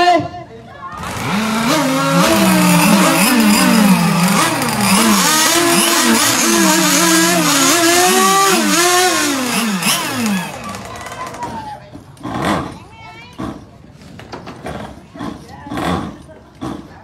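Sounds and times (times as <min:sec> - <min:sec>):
model boat engines revving: 0:01.0 - 0:11.4.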